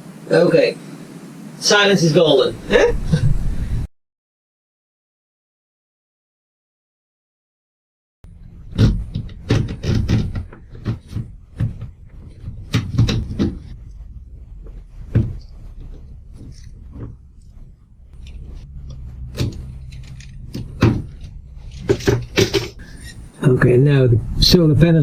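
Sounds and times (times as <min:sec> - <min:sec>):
steady low hum: 0:00.0 - 0:03.9, 0:08.2 - 0:25.0
sharp clicks and knocks: 0:08.3 - 0:23.3.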